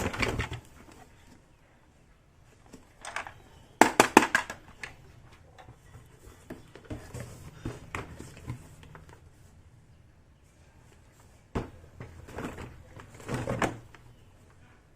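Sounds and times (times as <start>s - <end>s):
toy kitchen pieces clattering: 2.9s - 5.0s.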